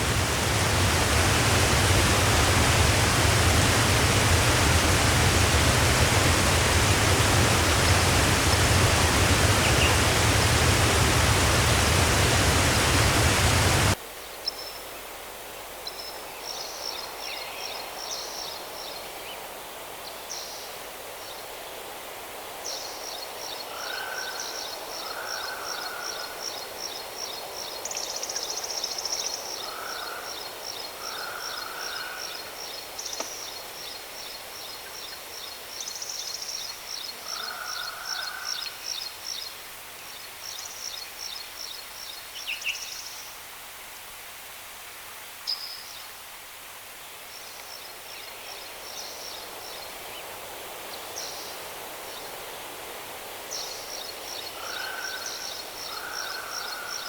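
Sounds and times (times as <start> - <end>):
waterfall rushing: 0.0 - 14.0.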